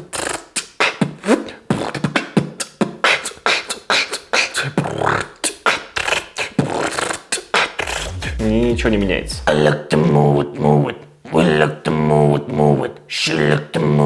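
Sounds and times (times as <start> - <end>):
person beatboxing: 0.0 - 9.8.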